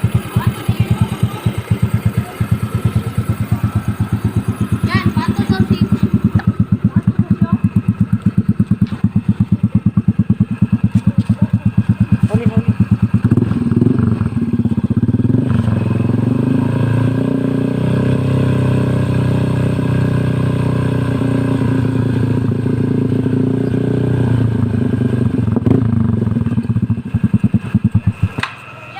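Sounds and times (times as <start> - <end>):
scooter engine revving and idling: 0.0 - 28.9.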